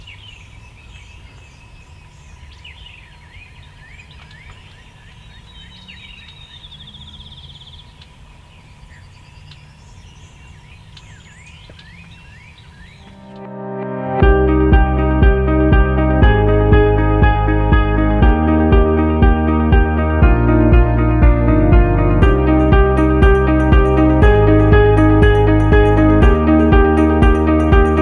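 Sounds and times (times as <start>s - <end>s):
songbirds singing: 0.0s - 13.2s
low rumble: 13.1s - 28.0s.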